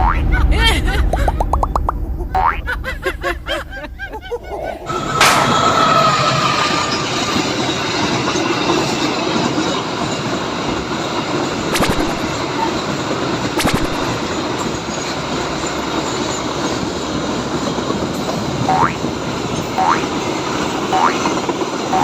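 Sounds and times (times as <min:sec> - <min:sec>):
train rumbling on rails: 0:00.2 - 0:01.2, 0:02.0 - 0:11.7, 0:12.4 - 0:13.6, 0:14.2 - 0:22.0
sharp clicks: 0:11.7 - 0:12.4, 0:13.6 - 0:14.3.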